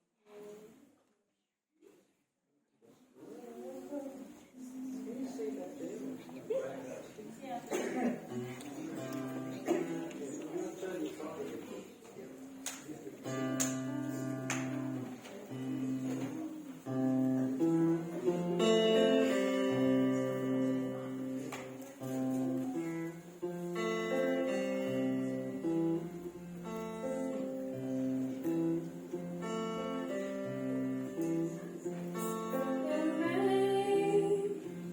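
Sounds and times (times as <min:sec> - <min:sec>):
acoustic guitar playing: 0:07.8 - 0:10.4, 0:13.2 - 0:34.9.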